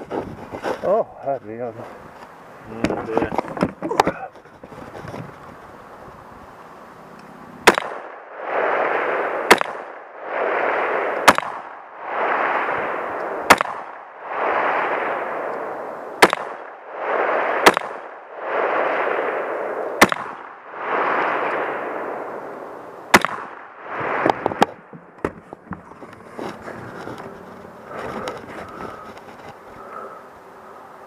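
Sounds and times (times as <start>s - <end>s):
rifle shots: 7.6s - 22.5s, 23.1s - 24.6s.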